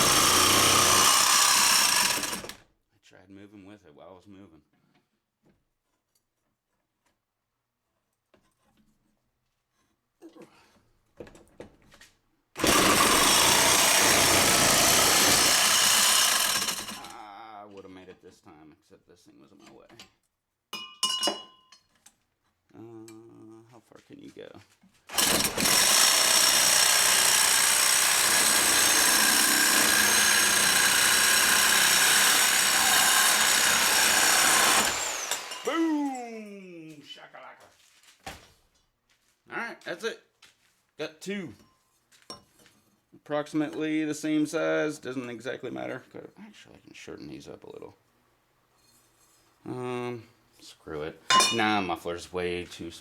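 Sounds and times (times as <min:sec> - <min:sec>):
power tool cutting pipe: 0:00.0 - 0:02.6, 0:12.6 - 0:17.2, 0:25.1 - 0:36.2.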